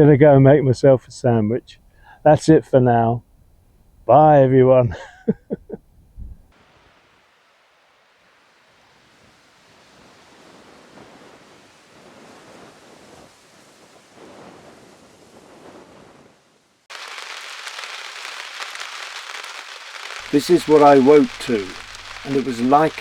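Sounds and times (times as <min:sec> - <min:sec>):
rain hissing: 0:06.5 - 0:13.0, 0:16.9 - 0:23.0
strong wind gusting: 0:20.2 - 0:23.0.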